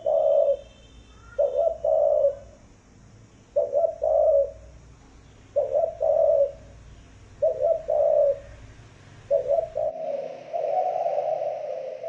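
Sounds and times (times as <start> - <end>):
dove cooing: 0.0 - 2.6, 3.5 - 4.7, 5.5 - 6.7, 7.4 - 8.6, 9.3 - 12.0.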